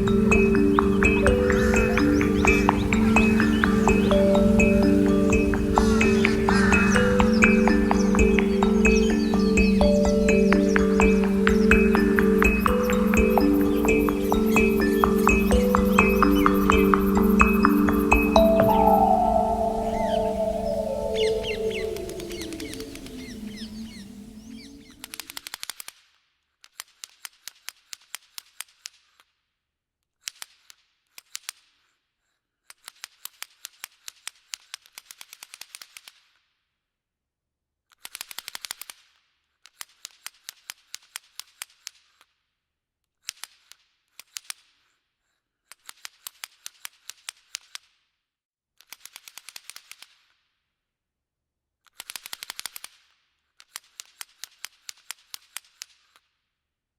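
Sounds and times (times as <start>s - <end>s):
background music: 0.0s - 25.2s.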